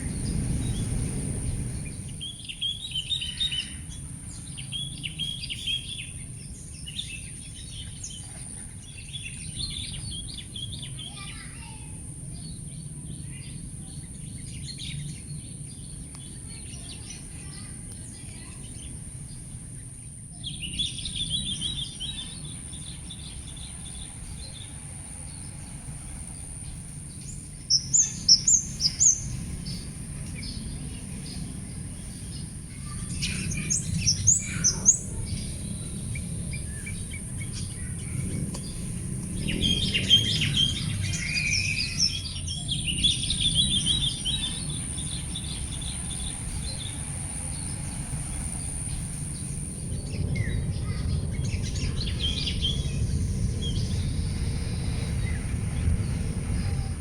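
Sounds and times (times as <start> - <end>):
low rumble: 0.0 - 6.6, 18.6 - 57.0
birds calling and chirping: 0.0 - 57.0
high hiss: 16.0 - 57.0.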